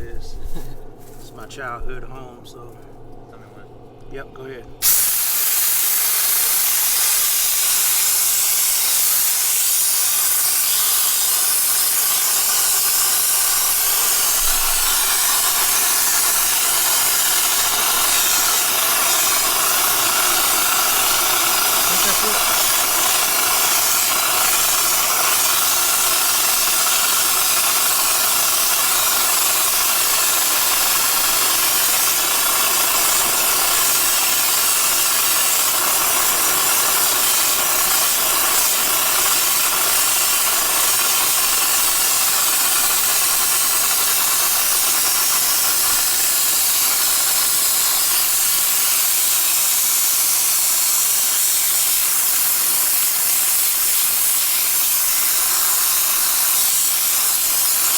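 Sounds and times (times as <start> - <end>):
compressed air hissing in a duct: 4.8 - 57.9.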